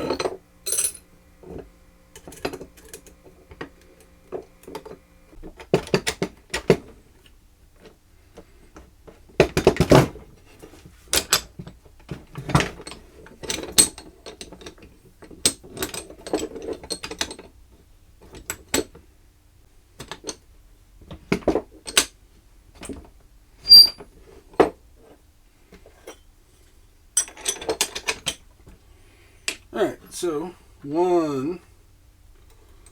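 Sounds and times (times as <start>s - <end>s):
metal parts clinking and knocking: 0.0s - 1.1s, 27.2s - 28.4s.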